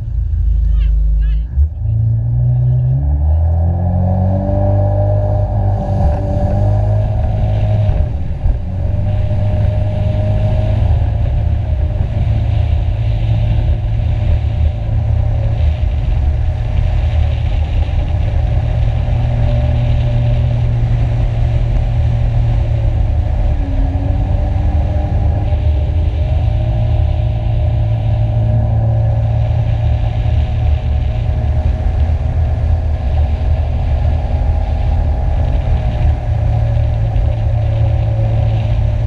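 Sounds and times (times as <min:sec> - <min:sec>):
jet ski engine at high speed: 0:04.4 - 0:39.0.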